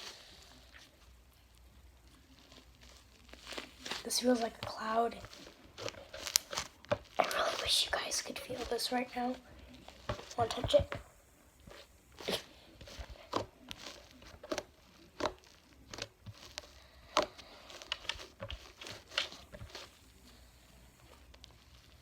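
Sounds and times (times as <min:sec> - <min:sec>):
sticky slime pops and crackles: 0:02.4 - 0:11.0, 0:12.2 - 0:19.9.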